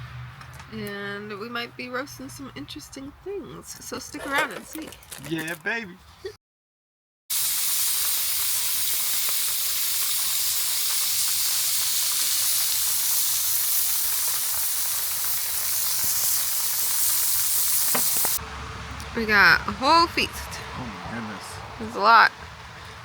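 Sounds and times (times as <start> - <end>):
meat sizzling: 7.3 - 18.4.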